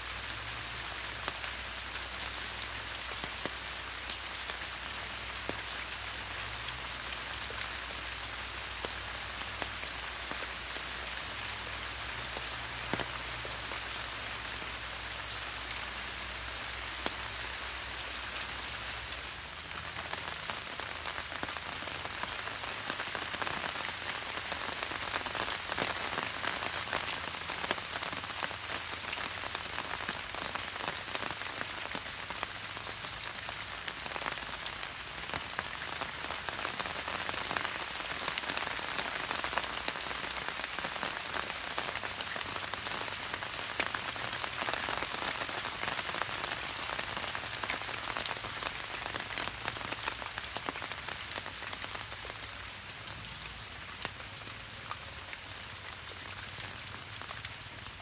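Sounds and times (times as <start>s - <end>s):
rain pattering: 0.0s - 58.0s.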